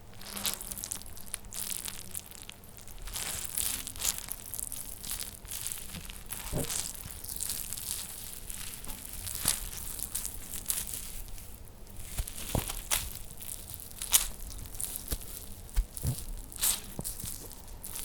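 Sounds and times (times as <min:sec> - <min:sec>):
tearing and crumpling crackles: 0:00.1 - 0:18.0
body dragging rustle: 0:05.5 - 0:18.0.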